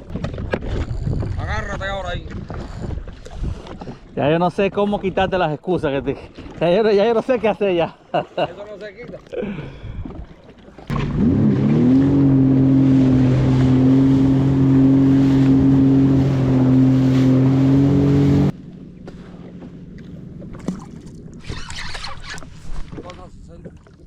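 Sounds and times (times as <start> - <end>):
jet ski engine: 10.5 - 24.0.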